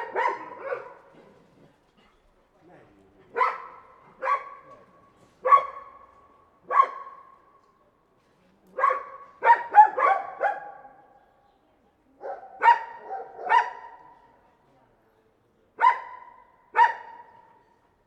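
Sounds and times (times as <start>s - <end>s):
dog barking: 0.0s - 1.3s, 3.3s - 4.7s, 5.4s - 6.0s, 6.7s - 7.3s, 8.8s - 10.9s, 12.2s - 14.2s, 15.8s - 17.6s.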